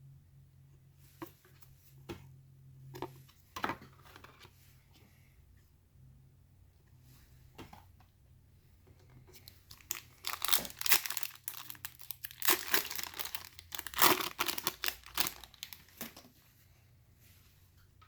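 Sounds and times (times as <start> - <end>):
card pack wrapper crinkling and tearing: 9.6 - 16.1.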